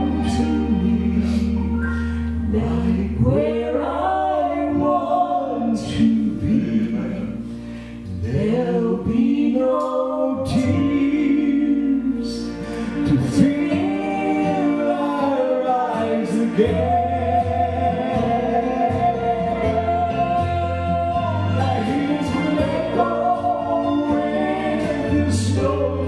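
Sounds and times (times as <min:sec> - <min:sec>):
gospel singing: 0:00.0 - 0:26.0.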